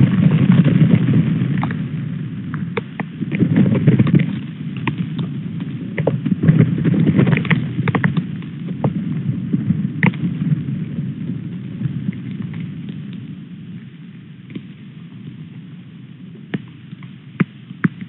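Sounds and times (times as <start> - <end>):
hailstones clicking: 0.0 - 1.9, 2.5 - 9.0
wind buffeting microphone: 0.0 - 18.0.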